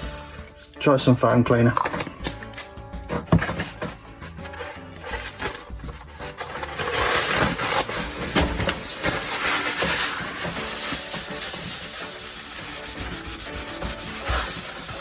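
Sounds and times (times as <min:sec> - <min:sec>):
faint background music: 0:00.0 - 0:15.0
rasping scrubbing: 0:04.4 - 0:15.0.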